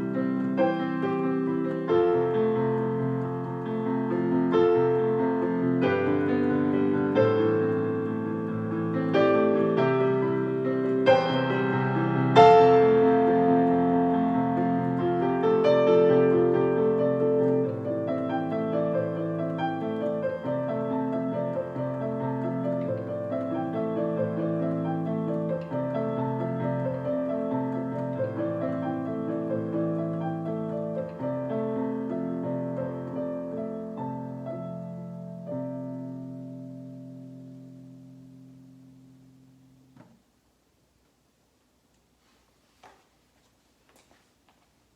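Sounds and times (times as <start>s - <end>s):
gentle piano chords: 0.0s - 40.2s.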